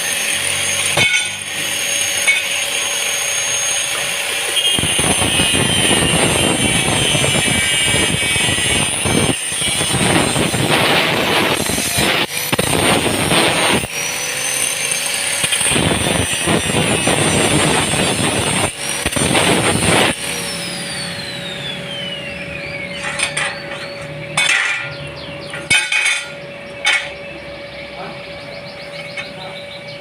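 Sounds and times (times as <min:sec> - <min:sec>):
power tool whining: 0:00.0 - 0:30.0.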